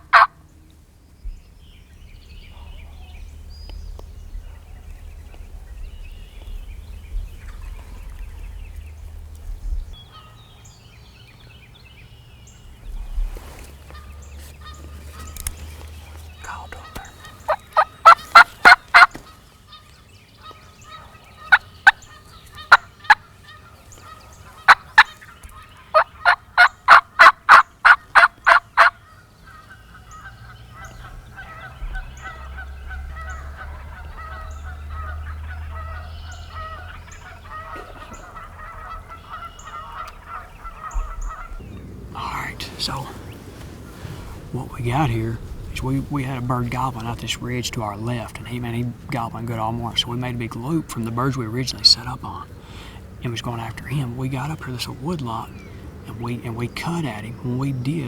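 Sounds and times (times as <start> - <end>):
turkey yelps: 0.0 - 0.4, 16.8 - 41.7
faint turkey calling: 0.0 - 58.0.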